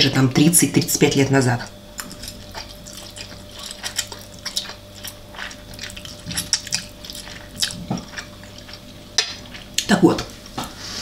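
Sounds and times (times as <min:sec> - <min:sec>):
wet smacking and slurping: 0:02.0 - 0:09.9.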